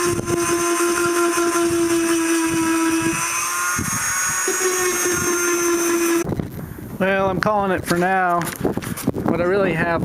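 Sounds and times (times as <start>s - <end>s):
abrasive rasping on hide: 0.0s - 6.3s
rotary tool motor whine: 0.0s - 6.3s.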